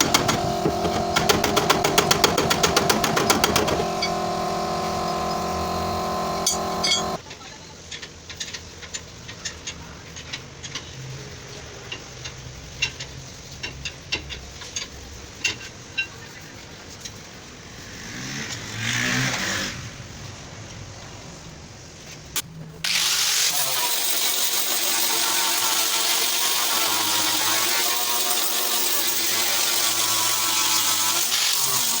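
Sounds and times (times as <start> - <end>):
low hum: 0.3 - 7.2.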